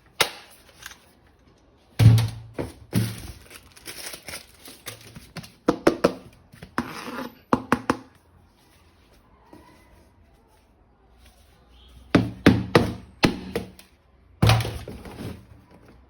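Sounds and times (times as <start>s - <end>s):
plastic packaging crinkling: 2.8s - 5.7s.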